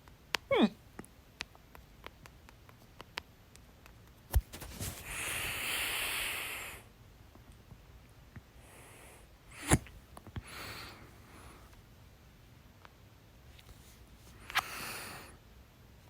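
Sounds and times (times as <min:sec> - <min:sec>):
woman hiccuping: 0:00.5 - 0:00.8
breathy exhale: 0:05.0 - 0:06.9, 0:10.4 - 0:11.8, 0:14.4 - 0:15.4.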